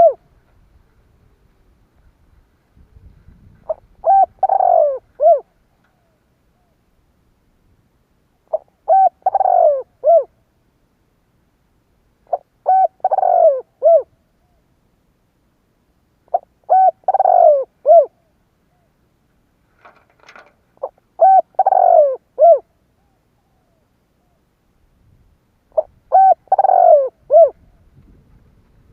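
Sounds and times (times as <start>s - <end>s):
dove cooing song: 0.0s - 0.4s, 2.9s - 6.8s, 8.4s - 10.5s, 12.2s - 14.7s, 16.2s - 19.0s, 20.8s - 24.4s, 25.7s - 28.3s
faint scratchy noise: 0.0s - 8.6s.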